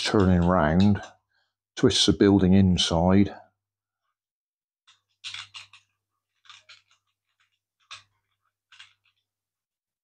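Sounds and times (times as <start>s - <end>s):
plastic parts clicking and scraping: 0.0s - 1.2s, 4.9s - 9.4s.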